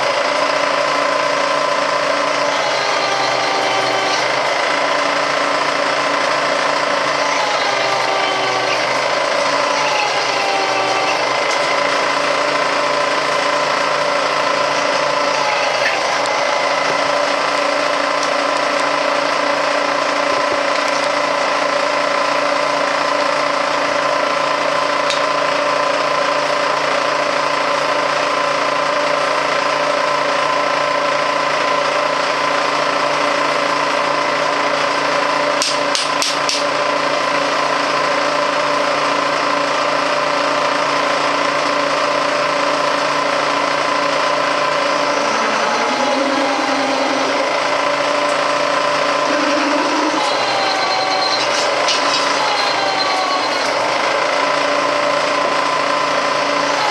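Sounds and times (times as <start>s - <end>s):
milling machine cutting metal: 0.0s - 21.9s, 35.3s - 56.9s.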